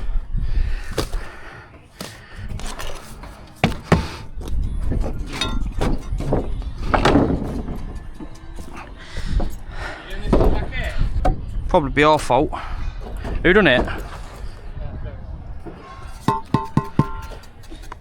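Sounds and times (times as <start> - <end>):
knocks and thuds of hand work: 2.0 - 9.6, 16.2 - 17.4.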